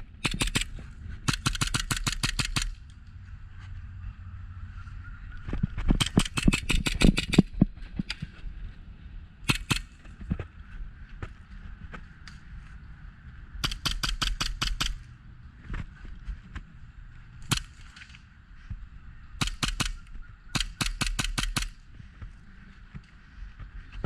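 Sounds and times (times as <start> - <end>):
airsoft guns firing: 0.2 - 2.8, 6.0 - 7.5, 9.5 - 10.0, 13.6 - 15.0, 17.4 - 17.8, 19.4 - 21.8.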